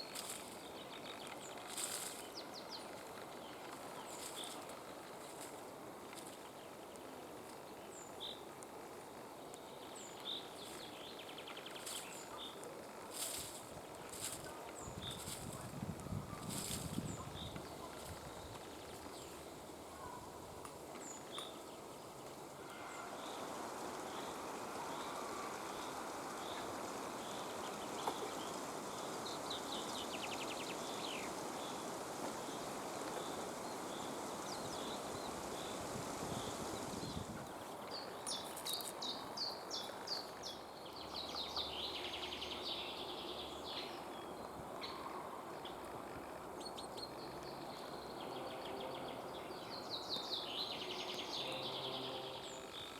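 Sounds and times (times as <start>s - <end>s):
chaffinch trilled song: 50.6s - 52.9s.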